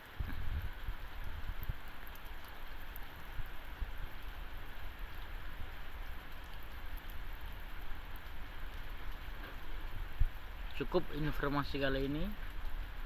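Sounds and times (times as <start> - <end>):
wind gusting against microphone: 0.0 - 2.0
heavy rain falling: 0.0 - 13.0.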